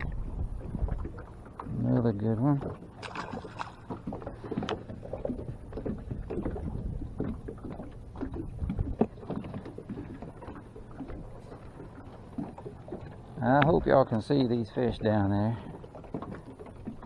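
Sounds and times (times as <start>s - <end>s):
knocks and rustling of fishing gear: 2.6s - 13.2s.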